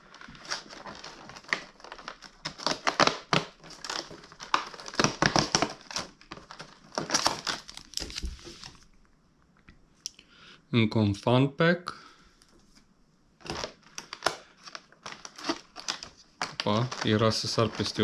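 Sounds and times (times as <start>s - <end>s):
plastic packaging crinkling: 0.0s - 8.9s, 13.4s - 18.0s.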